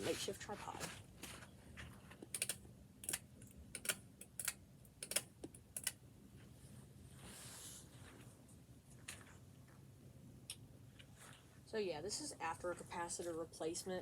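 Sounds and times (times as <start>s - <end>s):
ceiling fan clicking: 2.2s - 6.0s.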